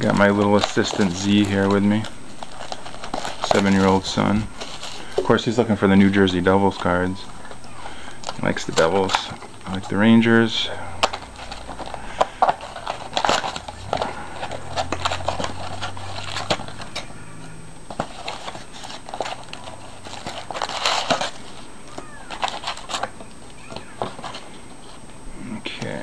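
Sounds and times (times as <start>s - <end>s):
low steady hum: 0.0s - 26.0s
wrapping and cardboard crinkling: 0.0s - 26.0s.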